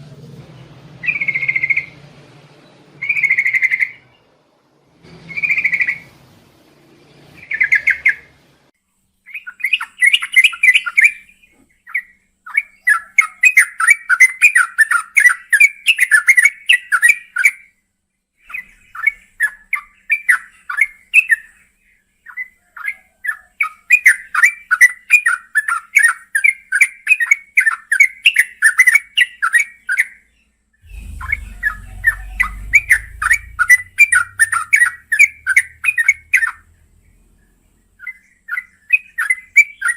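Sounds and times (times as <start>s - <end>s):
low rumble: 0.0s - 7.5s, 30.8s - 38.0s
bird chattering song: 30.9s - 39.9s.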